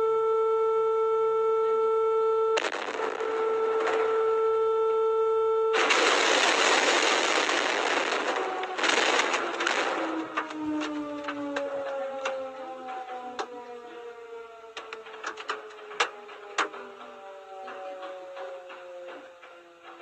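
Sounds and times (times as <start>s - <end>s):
crackles: 2.4s - 13.5s, 14.7s - 19.3s
loud static noise: 5.7s - 10.0s.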